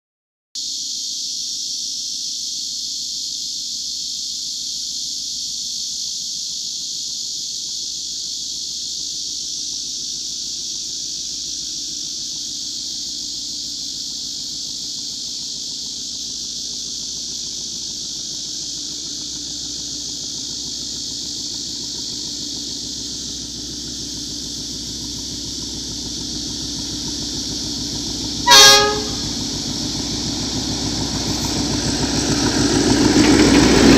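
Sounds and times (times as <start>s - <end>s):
steady high hiss: 0.6s - 33.9s
locomotive engine rumble: 7.6s - 33.9s
locomotive horn blast: 28.4s - 29.4s.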